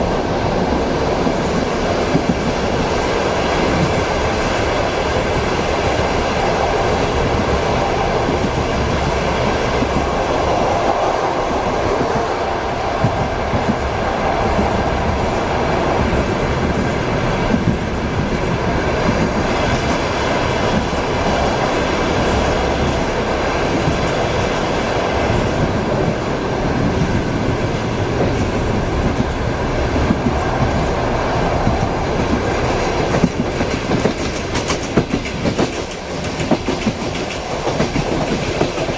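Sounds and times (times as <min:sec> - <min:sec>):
train carriage rumble: 0:00.0 - 0:38.9
train wheels clickety-clack: 0:00.0 - 0:38.9.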